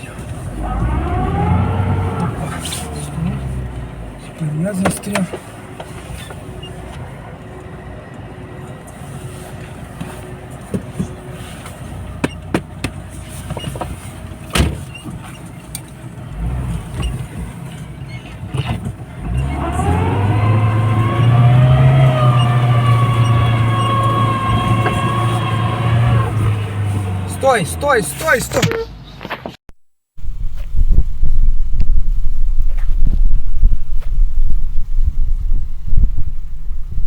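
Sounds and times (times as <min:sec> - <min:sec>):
off-road vehicle engine revving: 0:00.0 - 0:05.4, 0:16.2 - 0:28.7.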